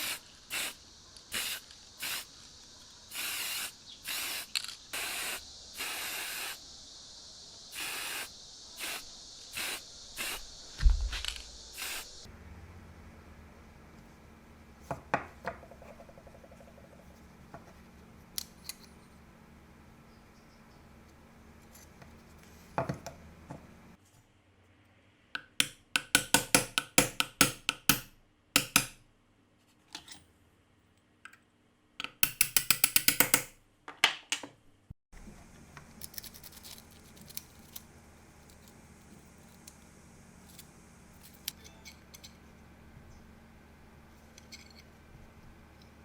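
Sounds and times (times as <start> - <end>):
steady low hum: 0.0 - 22.5.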